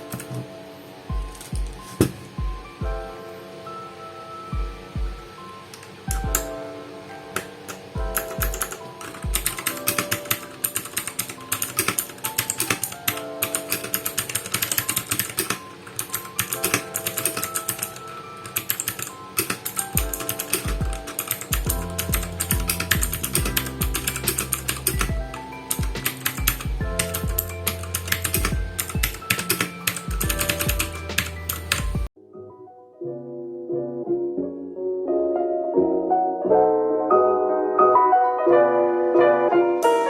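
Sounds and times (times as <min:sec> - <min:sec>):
background music: 0:00.0 - 0:40.0
mechanical keyboard typing: 0:05.7 - 0:06.5, 0:07.4 - 0:32.1
steady bass beat: 0:21.6 - 0:26.0, 0:26.6 - 0:27.7, 0:28.4 - 0:29.2, 0:30.1 - 0:32.1.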